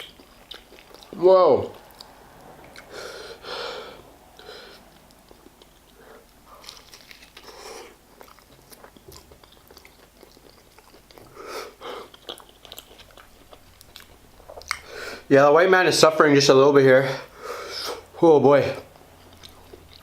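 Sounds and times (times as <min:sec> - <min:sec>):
person chewing: 0:00.0 - 0:15.3, 0:18.8 - 0:20.0
noisy breathing puffs: 0:01.8 - 0:05.0, 0:11.3 - 0:12.1, 0:14.8 - 0:15.3, 0:17.0 - 0:18.2.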